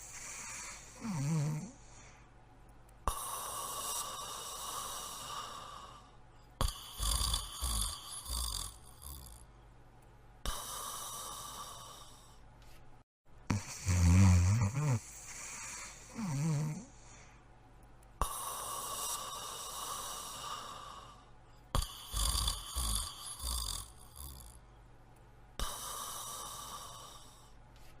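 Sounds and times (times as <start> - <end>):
dog snoring: 0.0 - 1.8, 6.6 - 9.5, 13.5 - 17.1, 21.8 - 24.6.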